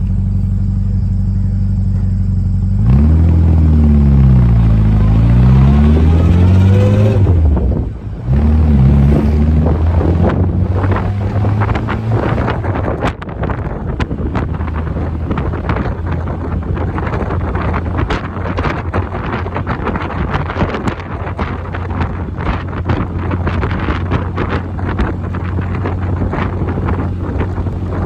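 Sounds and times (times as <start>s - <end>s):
car engine idling and revving: 0.0s - 28.0s
wind buffeting microphone: 3.0s - 28.0s.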